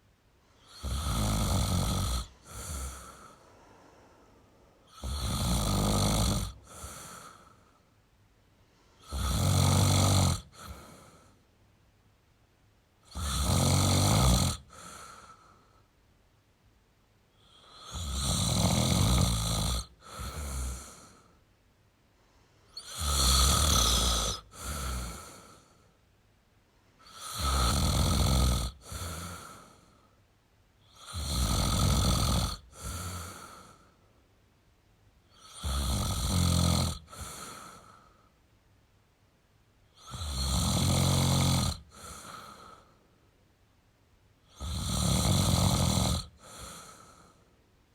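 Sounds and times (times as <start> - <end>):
person snoring: 0.6 - 7.8, 9.0 - 11.4, 13.0 - 15.6, 17.4 - 21.4, 22.7 - 25.9, 27.0 - 30.1, 30.8 - 33.9, 35.3 - 38.1, 39.9 - 43.0, 44.4 - 47.4
soft breath: 2.2 - 5.1, 6.5 - 9.2, 10.5 - 11.5, 14.7 - 16.0, 20.0 - 22.8, 37.1 - 38.4, 41.9 - 43.2, 46.4 - 47.6.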